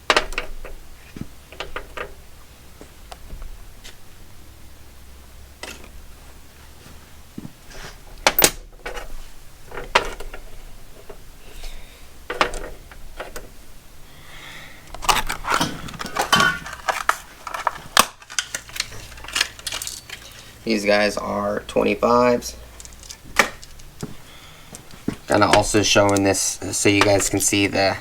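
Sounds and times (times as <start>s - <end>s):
metal bolts clinking together: 8.2s - 9.1s, 14.9s - 20.4s.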